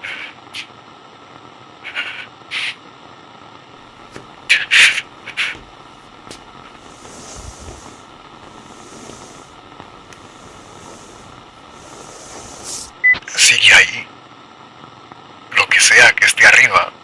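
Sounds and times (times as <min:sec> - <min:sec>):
sharp static crackles: 0:03.8 - 0:13.2
walkie-talkie static hiss: 0:03.8 - 0:14.0, 0:15.5 - 0:16.9.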